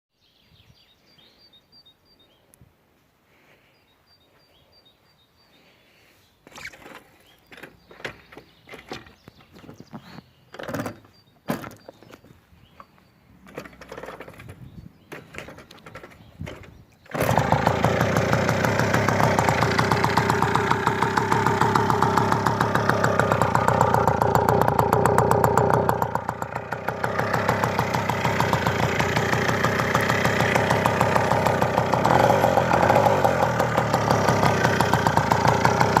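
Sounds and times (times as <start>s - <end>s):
moped engine running: 15.2s - 36.0s.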